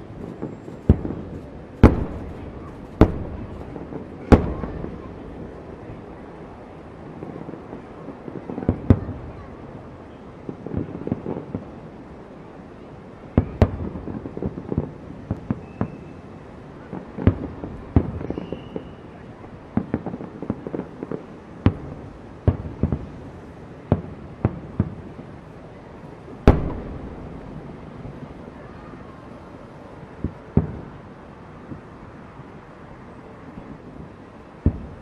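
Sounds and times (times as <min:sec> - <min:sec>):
firework whistle: 0:00.0 - 0:05.2, 0:15.4 - 0:16.4, 0:18.0 - 0:19.4
fireworks booming and cracking: 0:00.0 - 0:12.1, 0:13.2 - 0:32.0, 0:33.5 - 0:35.0
fireworks crackling: 0:00.0 - 0:35.0.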